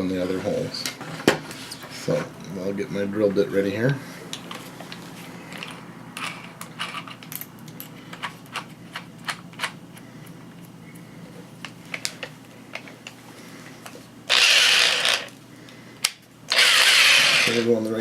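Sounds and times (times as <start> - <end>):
hand drill rattling burst: 14.3 - 15.3, 16.5 - 17.7.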